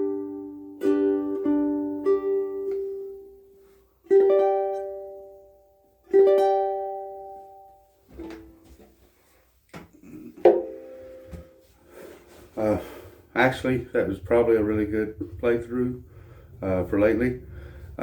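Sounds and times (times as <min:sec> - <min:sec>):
plucked ukulele notes: 0:00.0 - 0:08.6, 0:10.3 - 0:11.6
ukulele chords strummed: 0:00.0 - 0:08.8, 0:10.3 - 0:11.7.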